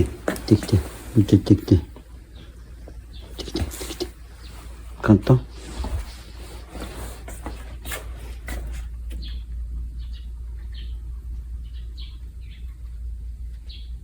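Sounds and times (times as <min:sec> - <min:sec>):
small birds chirping: 0:00.0 - 0:14.0
steady low rumble: 0:08.2 - 0:14.0.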